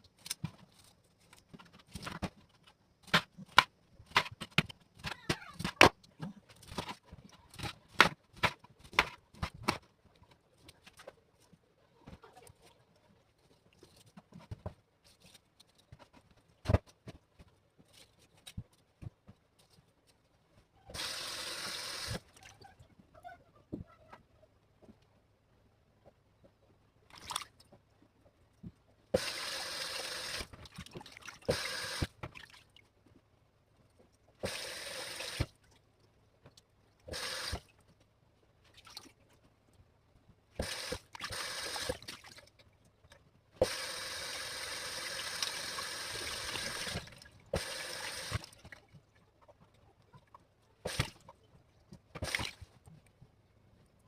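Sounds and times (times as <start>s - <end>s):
splashes and knocks: 27.1s - 27.8s, 30.4s - 32.8s
water running from a tap: 43.6s - 47.0s.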